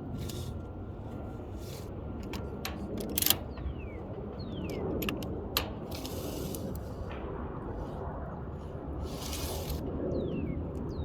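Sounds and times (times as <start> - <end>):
steady background noise: 0.0 - 11.0
rustle: 9.0 - 9.8.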